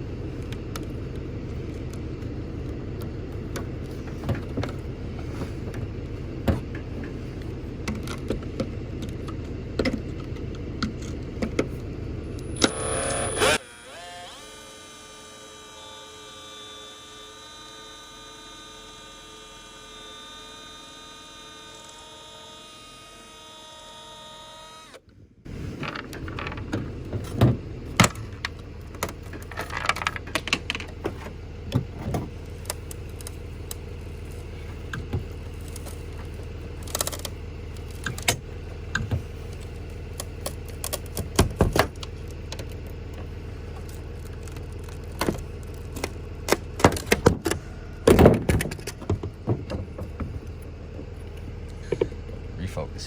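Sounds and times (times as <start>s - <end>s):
steady low hum: 0.0s - 53.0s
steady multi-tone whine: 11.5s - 25.0s.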